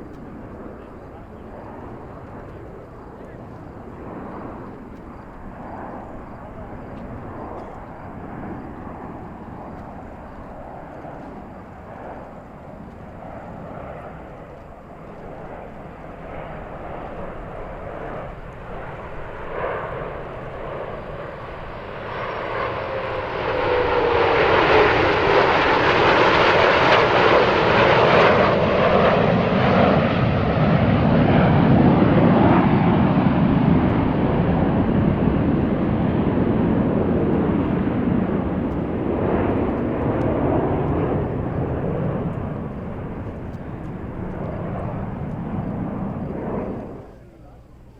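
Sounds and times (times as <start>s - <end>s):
jet roar: 0.0s - 47.9s.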